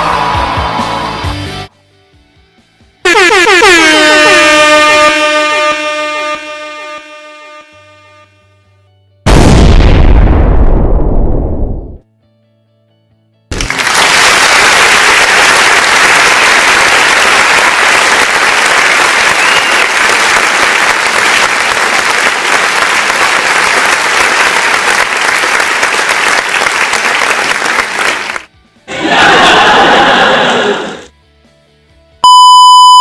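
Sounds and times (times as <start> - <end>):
crowd applauding: 0.0 - 1.4, 13.5 - 31.1.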